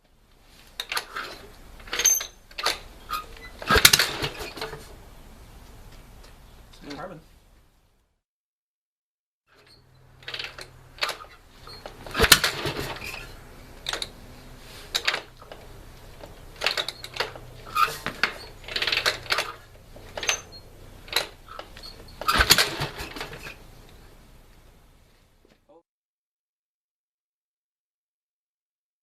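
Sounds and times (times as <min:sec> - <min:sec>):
motorcycle engine clanks and pops: 0:00.3 - 0:05.0, 0:09.6 - 0:24.7.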